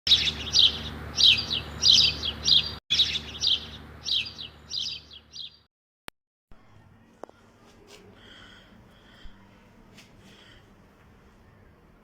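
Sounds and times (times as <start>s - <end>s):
small birds chirping: 0.1s - 5.7s.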